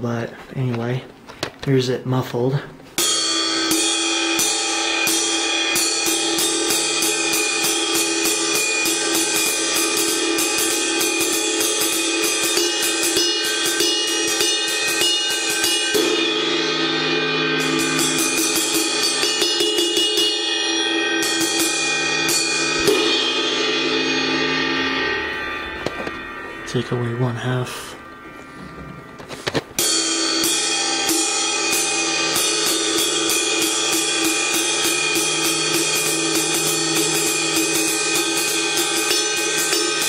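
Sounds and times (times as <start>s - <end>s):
ride cymbal struck with drumstick: 3.0s - 40.0s
lower ringing tone: 3.2s - 40.0s.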